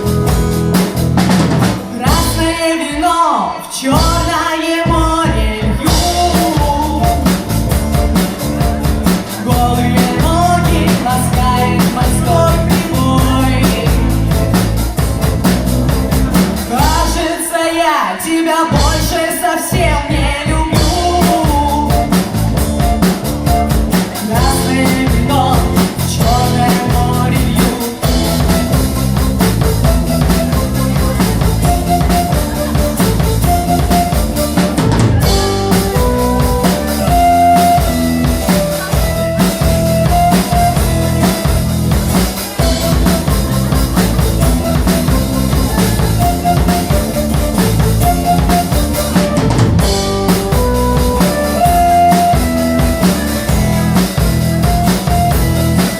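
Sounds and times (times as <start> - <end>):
drum kit fast beat: 0.0 - 2.8, 3.9 - 17.5, 18.7 - 55.9
rock band playing live: 0.0 - 55.9.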